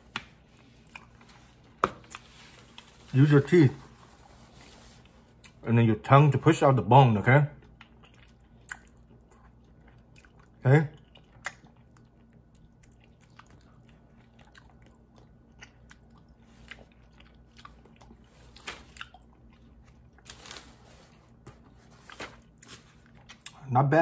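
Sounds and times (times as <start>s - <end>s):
wet chewing mouth clicks: 7.6s - 18.2s.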